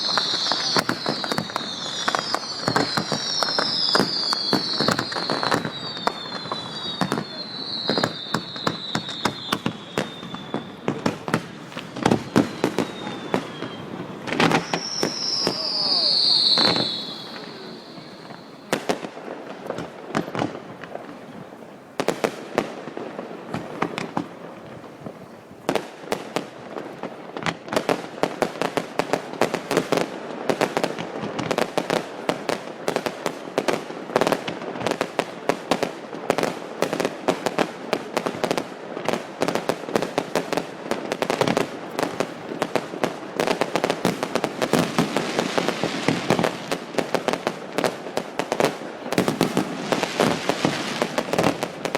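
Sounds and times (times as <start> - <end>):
fireworks bangs and crackles: 0.0 - 51.9.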